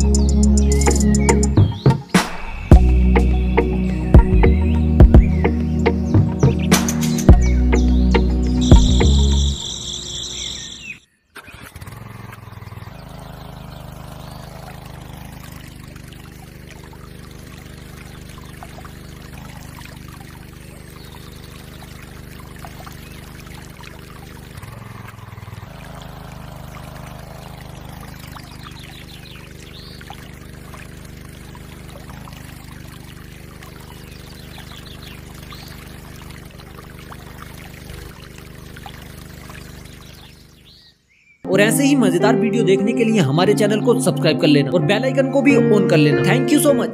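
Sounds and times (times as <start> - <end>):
small pump motor humming: 11.5 - 40.8
water pouring and trickling: 11.8 - 40.8.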